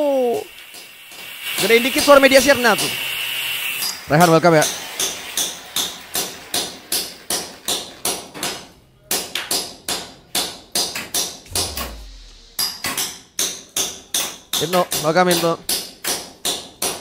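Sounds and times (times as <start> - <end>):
low thud: 11.5 - 13.1.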